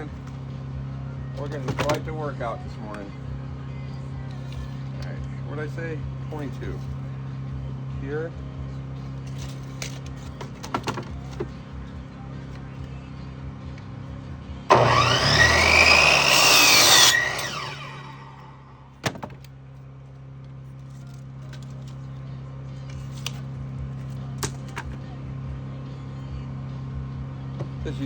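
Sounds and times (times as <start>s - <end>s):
power saw cutting wood: 14.7s - 18.8s
low hum: 14.7s - 19.0s.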